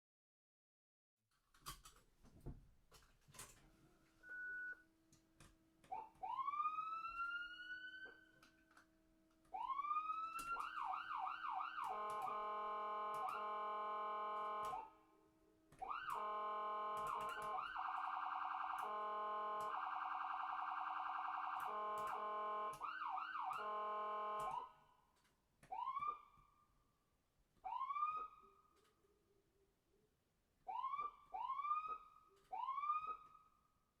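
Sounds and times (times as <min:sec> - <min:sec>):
electronic ambulance siren: 0:05.9 - 0:08.5, 0:09.5 - 0:15.0, 0:15.8 - 0:24.9, 0:25.7 - 0:26.6, 0:27.6 - 0:28.7, 0:30.7 - 0:33.5.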